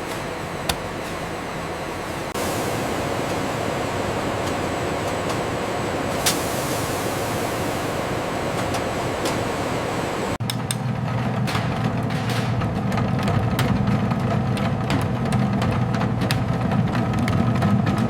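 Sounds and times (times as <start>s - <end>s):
loud rushing hiss: 0.0s - 10.4s.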